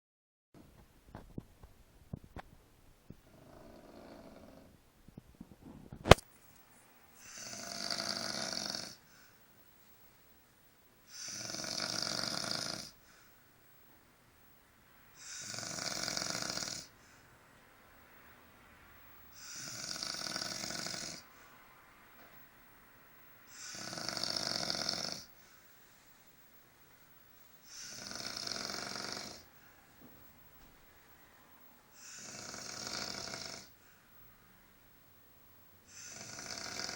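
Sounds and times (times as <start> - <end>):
man snoring: 3.2 - 4.7, 7.2 - 9.0, 11.1 - 13.0, 15.2 - 16.9, 19.3 - 21.3, 23.5 - 25.4, 27.6 - 29.5, 31.9 - 33.8, 35.9 - 36.9.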